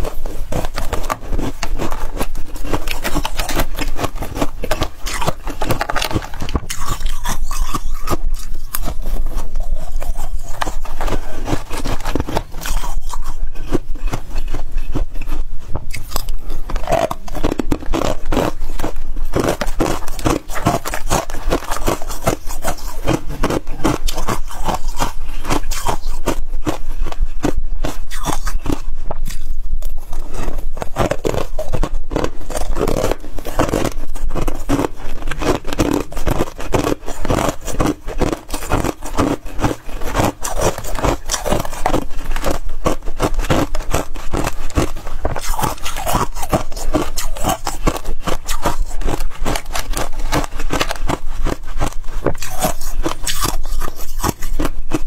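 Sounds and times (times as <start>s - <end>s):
frost being chewed and scraped: 0.0s - 55.0s.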